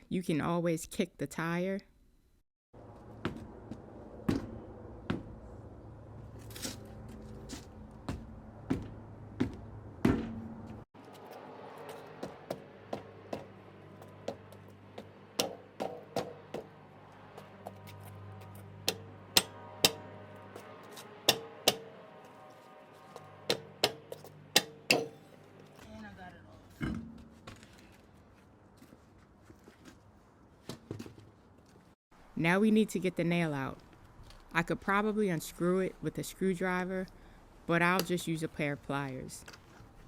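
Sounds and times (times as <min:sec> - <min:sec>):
knocks of kicking a car wheel: 0:08.1 - 0:10.5.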